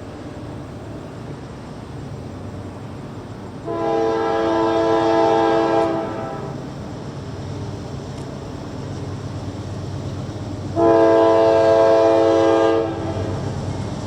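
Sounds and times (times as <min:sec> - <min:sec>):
passing train rumble: 0:00.0 - 0:14.0
locomotive air horn blast: 0:03.6 - 0:06.6, 0:10.8 - 0:13.4.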